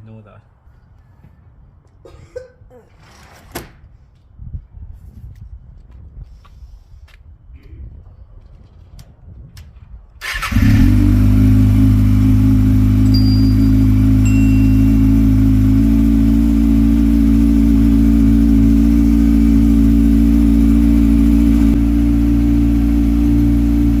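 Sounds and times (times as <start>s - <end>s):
motorcycle engine idling: 10.2s - 24.0s.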